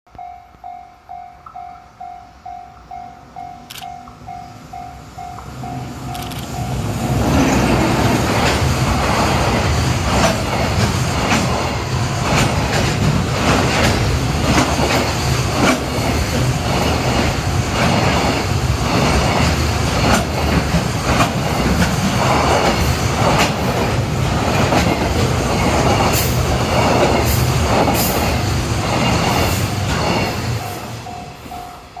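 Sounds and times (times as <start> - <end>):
level crossing warning bell: 0.1 - 7.0, 30.9 - 32.0
train wheels clattering over rail joints: 6.1 - 30.8.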